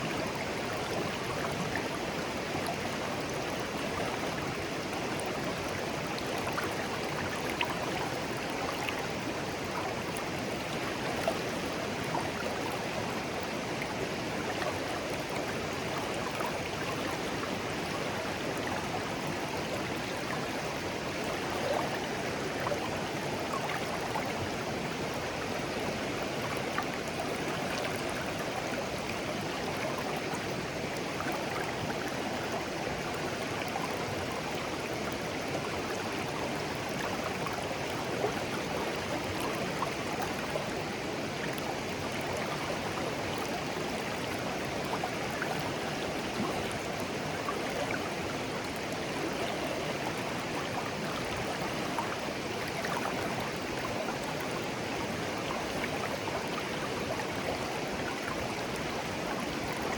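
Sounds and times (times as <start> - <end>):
stream babbling over stones: 0.1 - 59.9.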